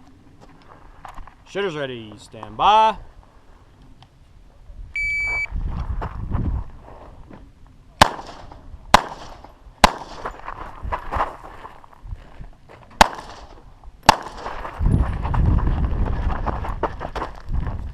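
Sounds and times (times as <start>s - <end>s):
shot timer beep: 5.0s - 5.5s
pistol shots: 8.0s - 10.2s, 13.0s - 14.6s.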